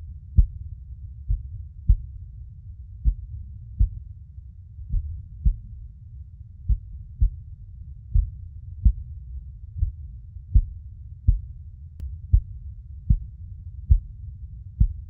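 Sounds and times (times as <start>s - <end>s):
constant low rumble: 0.0s - 15.0s
heartbeat thumps: 0.3s - 0.6s, 1.2s - 2.2s, 3.0s - 4.0s, 4.8s - 5.8s, 6.7s - 7.5s, 8.1s - 9.1s, 9.8s - 11.6s, 12.3s - 14.2s, 14.8s - 15.0s.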